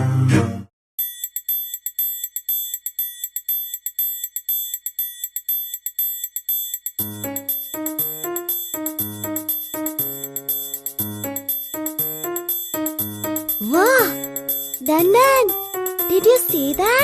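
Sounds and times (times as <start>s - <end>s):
small bell ringing rapidly: 1.0s - 17.0s
background music: 7.0s - 17.0s.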